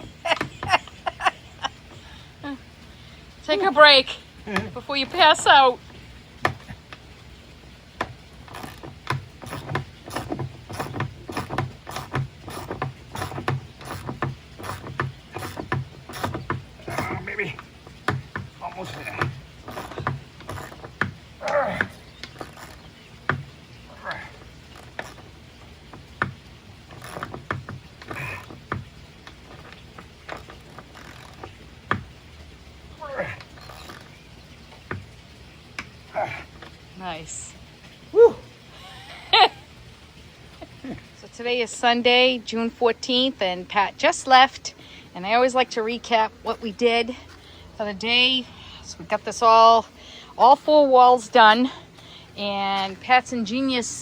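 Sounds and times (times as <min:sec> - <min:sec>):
screw scraping in wood: 0:08.0 - 0:32.2, 0:33.3 - 0:34.1.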